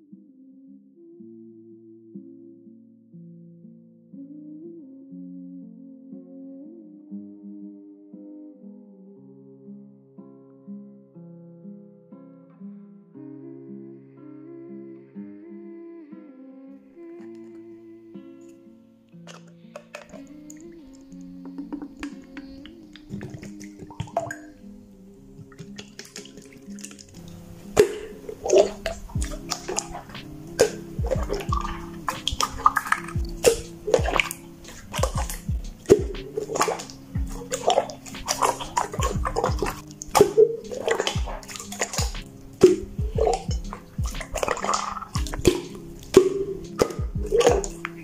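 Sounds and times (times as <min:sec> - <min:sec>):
soft background music: 0:00.0 - 0:48.0
slime wet pops and clicks: 0:27.8 - 0:48.0.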